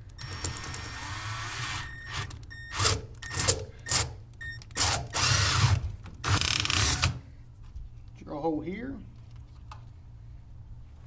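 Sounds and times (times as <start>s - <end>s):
power drill boring: 0.2s - 2.3s.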